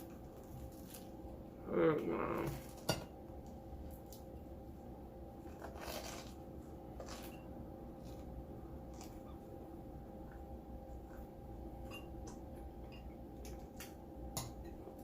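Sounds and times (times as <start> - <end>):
chewing crunchy bread: 0.0 - 1.4, 5.4 - 11.5.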